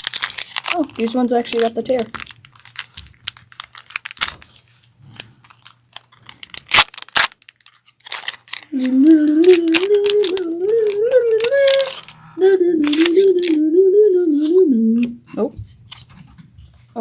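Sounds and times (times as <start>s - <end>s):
foil wrapper tearing and crinkling: 0.0s - 12.1s, 12.8s - 13.6s
sharp wrapper snaps: 0.0s - 12.1s, 12.8s - 13.6s.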